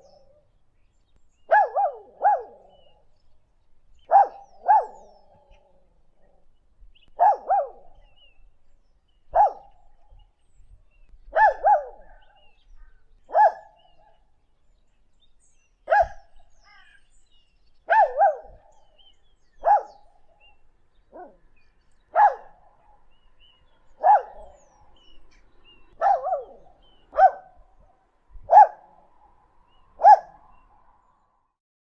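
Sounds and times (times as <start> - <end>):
birds chirping faintly: 0.0 - 31.4
dog barking with echo: 1.5 - 3.0, 4.1 - 5.6, 7.2 - 8.0, 9.3 - 9.8, 11.3 - 12.4, 13.3 - 13.8, 15.9 - 16.3, 17.9 - 18.8, 19.6 - 20.1, 21.1 - 21.4, 22.1 - 23.1, 24.0 - 25.1, 26.0 - 27.6, 28.4 - 29.0, 30.0 - 30.6.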